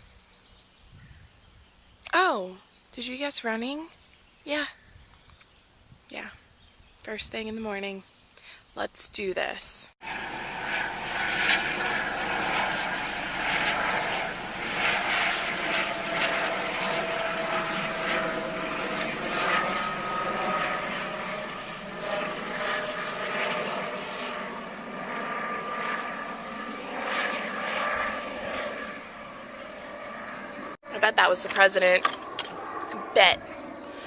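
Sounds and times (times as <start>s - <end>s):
helicopter flying overhead: 7.1s - 34.0s.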